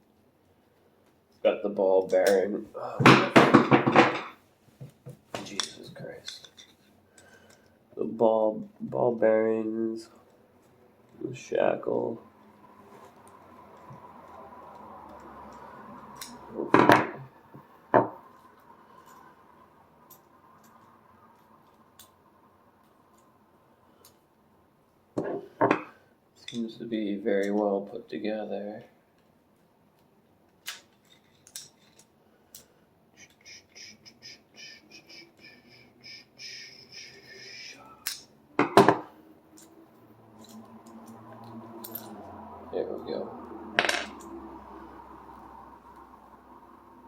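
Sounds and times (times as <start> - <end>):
metal parts knocking on hard surface: 3.0 - 4.4.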